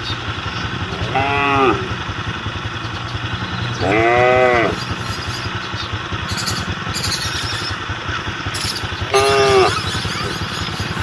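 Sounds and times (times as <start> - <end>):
engine running: 0.0 - 11.0
livestock call: 0.7 - 2.1, 3.7 - 5.6, 8.6 - 11.0.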